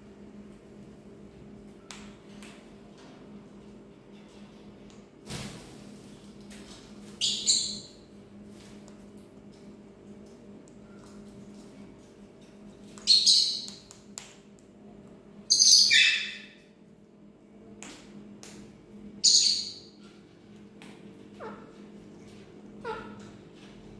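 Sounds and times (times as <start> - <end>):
parrot screeching: 15.5 - 16.5, 22.8 - 23.2.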